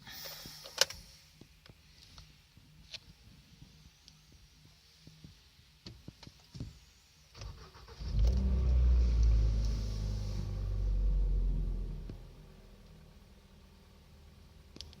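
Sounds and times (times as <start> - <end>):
car engine starting and running: 7.4 - 15.0.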